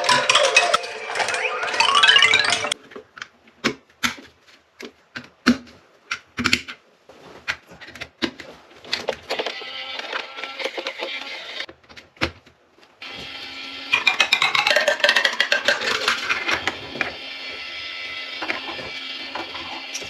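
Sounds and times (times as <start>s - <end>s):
marbles clattering down a track: 0.0s - 2.8s, 13.9s - 16.8s
pitched notes: 0.0s - 2.8s
steady music: 0.0s - 2.8s.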